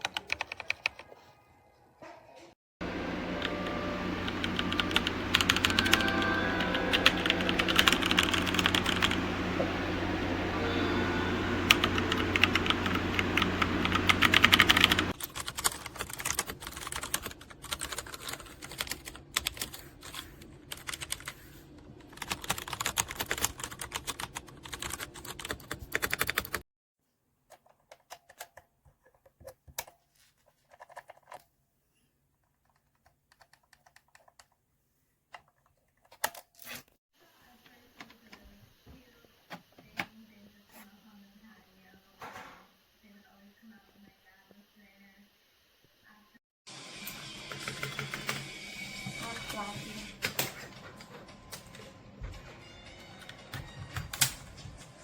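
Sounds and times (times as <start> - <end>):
mechanical keyboard typing: 0.0 - 1.1, 4.2 - 9.2, 11.7 - 26.6, 32.7 - 34.6, 47.5 - 48.4.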